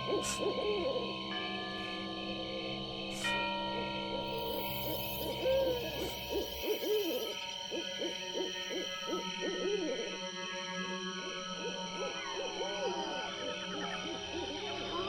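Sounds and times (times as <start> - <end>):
owls hooting: 0.0 - 1.1, 4.3 - 15.0
eerie humming tones: 0.0 - 15.0.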